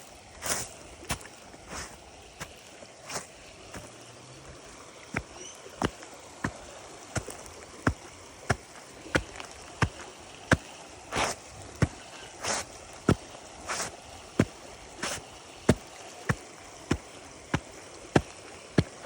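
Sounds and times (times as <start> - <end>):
outdoor background hiss: 0.0 - 19.0
footsteps on pavement: 5.1 - 19.0.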